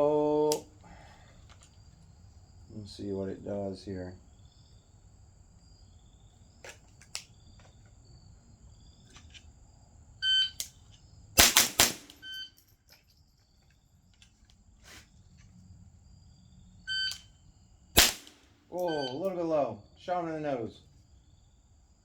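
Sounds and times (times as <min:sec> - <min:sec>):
crickets chirping: 0:00.0 - 0:22.0
rifle shots: 0:11.4 - 0:12.4, 0:18.0 - 0:18.5
shot timer beeps: 0:18.8 - 0:19.3.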